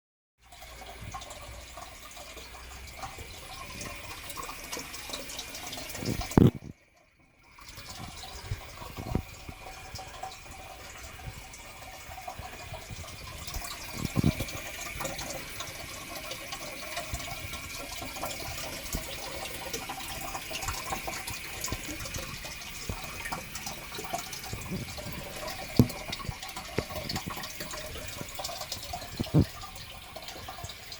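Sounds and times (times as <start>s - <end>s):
sharp knocks: 25.8s - 26.2s.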